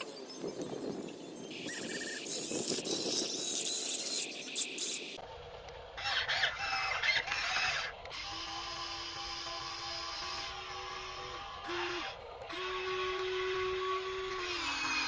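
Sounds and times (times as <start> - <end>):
small electric motors whining: 0.0 - 15.0.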